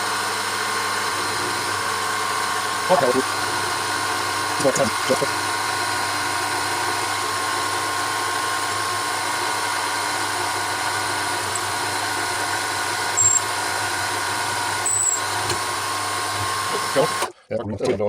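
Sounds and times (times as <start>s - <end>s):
milling machine spindle running: 0.0s - 17.3s
high squeals from cutting metal: 13.2s - 13.5s, 14.8s - 15.3s.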